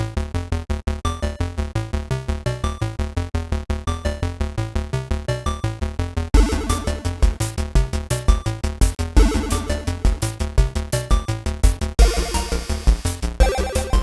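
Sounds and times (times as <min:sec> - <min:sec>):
bouncy synthesizer tune: 0:06.4 - 0:08.5, 0:09.2 - 0:11.3, 0:12.0 - 0:14.0.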